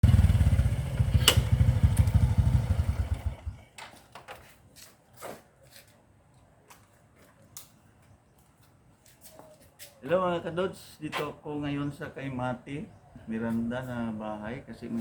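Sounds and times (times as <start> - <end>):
small engine throbbing: 0.0 - 3.6.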